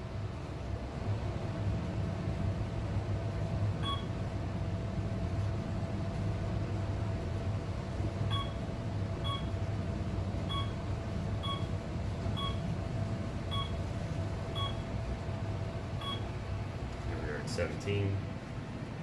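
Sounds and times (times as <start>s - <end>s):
elevator hum: 0.0s - 19.0s
short electronic beeps: 12.4s - 12.6s, 13.5s - 13.8s, 14.5s - 14.8s.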